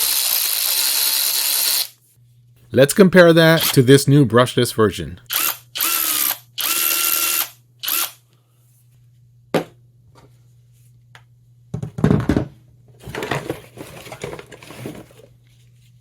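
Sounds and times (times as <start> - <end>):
tools scraping and rattling: 13.0 - 15.4.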